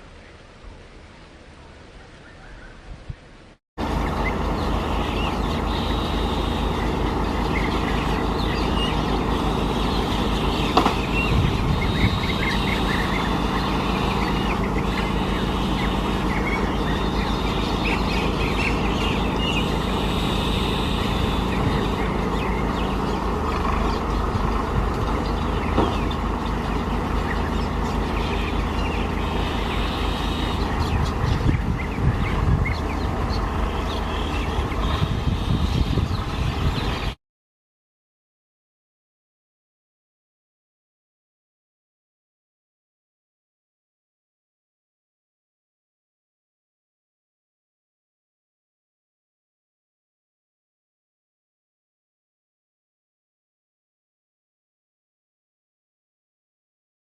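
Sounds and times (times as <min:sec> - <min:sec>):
engine low pulsing hum: 0:00.0 - 0:37.2
birds chirping: 0:01.6 - 0:03.0, 0:03.8 - 0:37.2.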